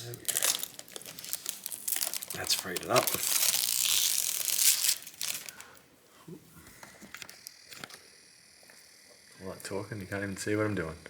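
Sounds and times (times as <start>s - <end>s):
plastic bag crinkling: 0.0s - 5.8s.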